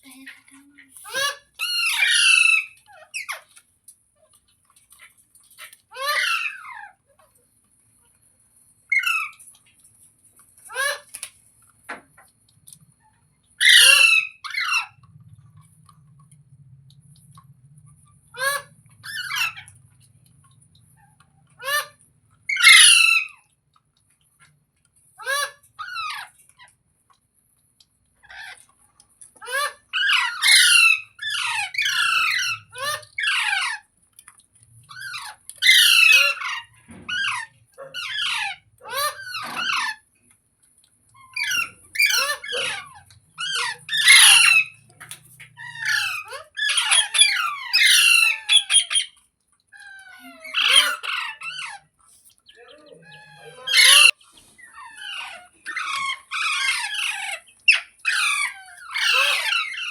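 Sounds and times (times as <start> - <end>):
parrot squawking: 1.0 - 3.5, 5.9 - 7.0, 10.7 - 11.2, 13.6 - 15.3, 18.2 - 20.1, 21.0 - 23.4, 25.2 - 26.7, 29.4 - 33.8, 34.8 - 40.0, 41.2 - 59.9.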